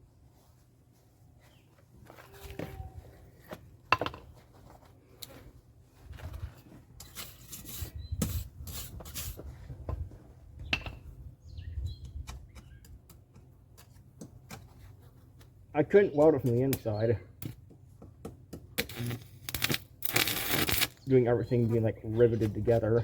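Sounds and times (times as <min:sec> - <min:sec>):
metal clinking and scraping: 0:06.6 - 0:09.4.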